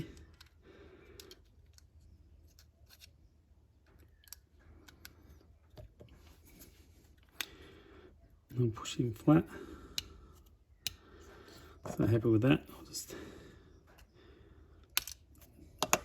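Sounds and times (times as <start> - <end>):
plastic part clicks and taps: 15.8 - 16.0.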